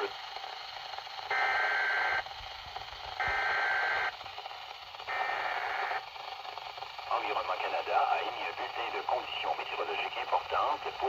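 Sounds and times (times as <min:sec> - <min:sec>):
faint radio hiss: 0:07.1 - 0:11.0.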